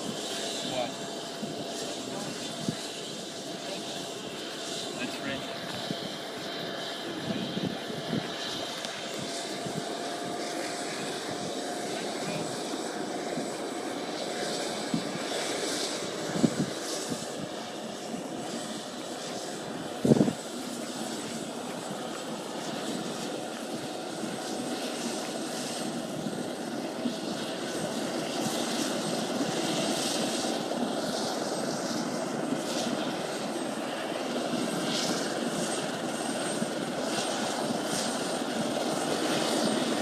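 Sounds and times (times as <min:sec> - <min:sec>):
helicopter turbine and rotor: 0:00.0 - 0:40.0.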